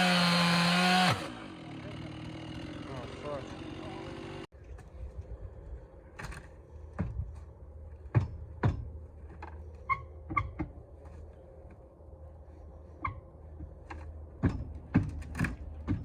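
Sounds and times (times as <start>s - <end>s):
sharp knocks and clicks: 8.0s - 9.6s, 13.0s - 16.0s.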